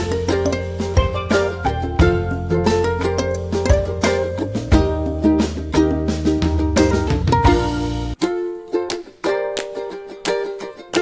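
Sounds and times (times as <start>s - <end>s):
low bass layer: 0.0s - 8.2s
plucked string notes: 0.0s - 11.0s.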